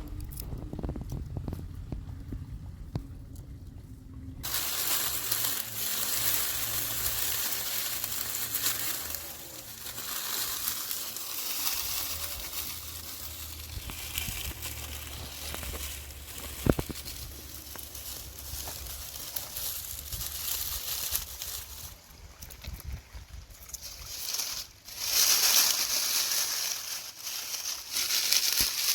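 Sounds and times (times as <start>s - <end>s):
food sizzling in hot oil: 4.4s - 9.3s.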